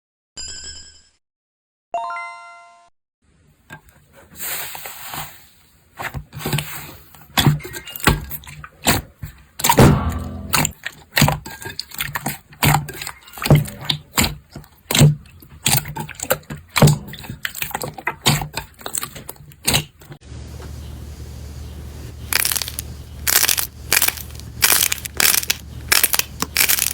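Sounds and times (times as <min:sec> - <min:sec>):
slime squeezed sticky pops: 0:22.3 - 0:26.9.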